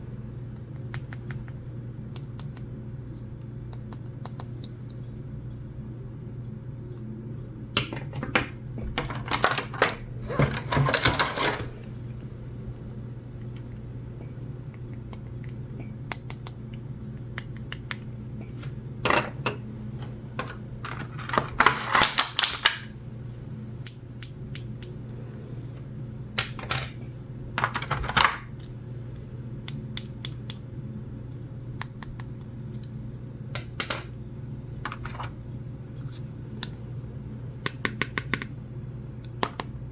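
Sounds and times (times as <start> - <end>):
plastic toy pieces clattering: 9.0 - 11.7, 20.8 - 22.9, 27.6 - 28.4.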